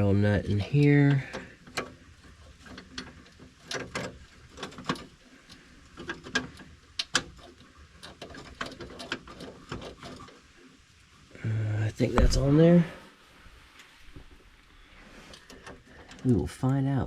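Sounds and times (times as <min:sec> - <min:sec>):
small metallic clicks: 0:00.8 - 0:10.5.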